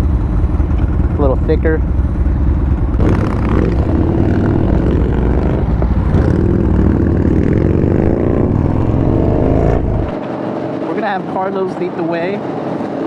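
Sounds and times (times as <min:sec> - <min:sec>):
motorcycle engine accelerating: 0:00.0 - 0:10.2.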